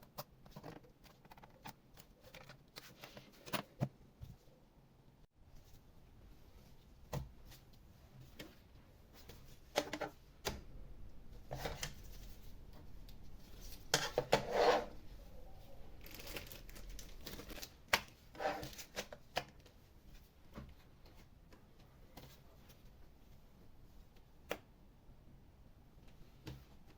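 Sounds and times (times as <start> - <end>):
rustling or scraping: 11.4 - 17.7.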